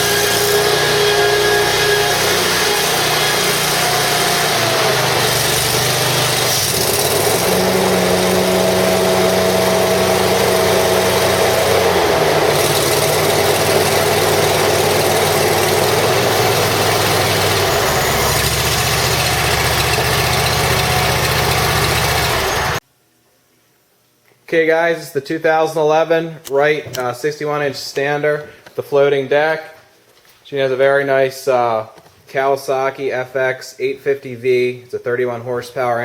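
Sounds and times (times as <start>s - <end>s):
mower engine running: 0.0s - 22.8s.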